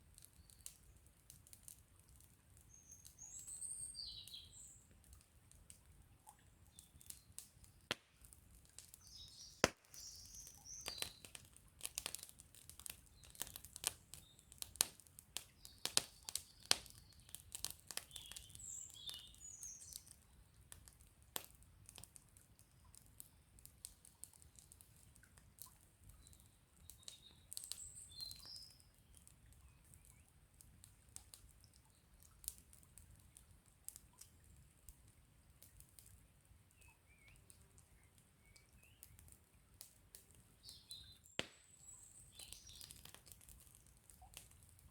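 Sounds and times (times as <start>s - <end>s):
campfire crackling and popping: 0.0s - 44.9s
small birds chirping: 2.6s - 8.0s, 8.7s - 20.6s, 24.2s - 30.4s, 35.6s - 39.4s, 40.5s - 44.8s.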